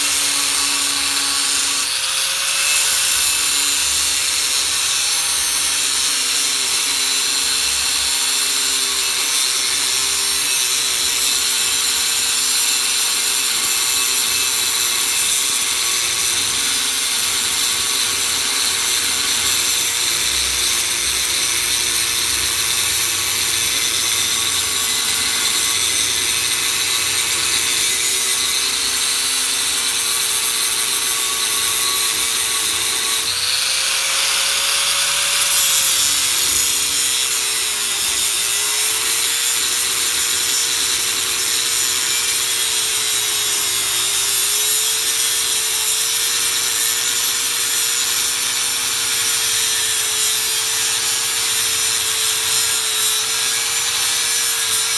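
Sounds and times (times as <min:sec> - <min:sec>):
angle grinder grinding steel: 0:00.0 - 0:54.9.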